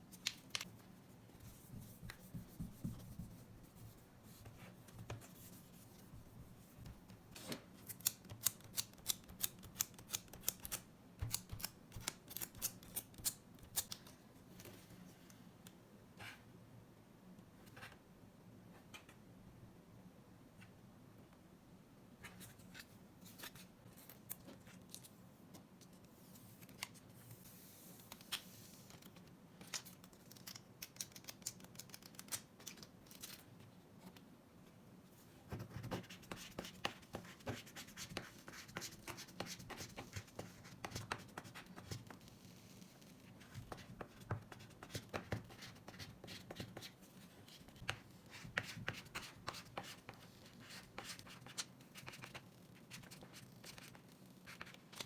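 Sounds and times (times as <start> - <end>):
tapping and scratching on screen: 1.4 - 14.0, 35.5 - 55.0.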